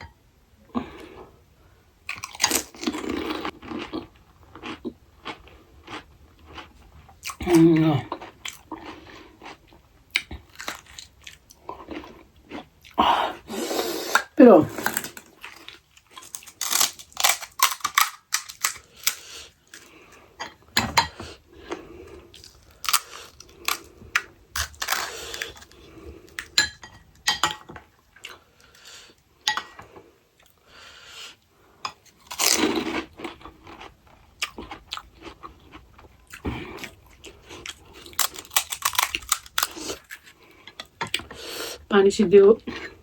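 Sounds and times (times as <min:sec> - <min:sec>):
crunching and chewing: 0:02.1 - 0:13.0, 0:14.8 - 0:20.3, 0:20.9 - 0:28.8, 0:31.9 - 0:41.5.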